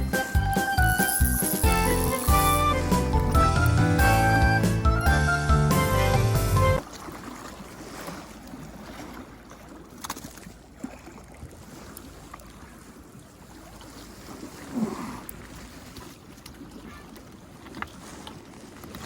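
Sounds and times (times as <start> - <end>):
background music: 0.0 - 6.8
water: 0.0 - 19.0
wind: 0.0 - 19.0.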